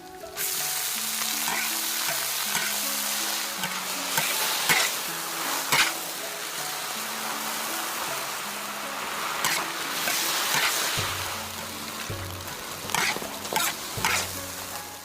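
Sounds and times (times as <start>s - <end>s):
food sizzling in hot oil: 0.0s - 15.0s
utensil scraping a pan: 1.4s - 2.8s, 3.5s - 6.1s, 9.0s - 14.6s.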